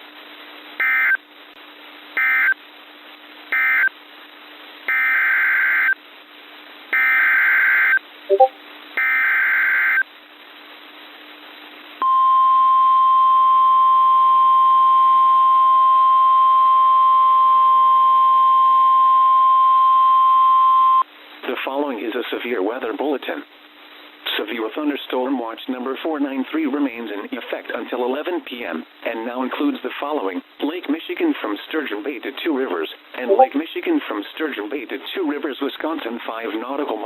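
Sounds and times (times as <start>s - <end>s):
brief chirp: 8.3s - 8.5s, 33.3s - 33.6s.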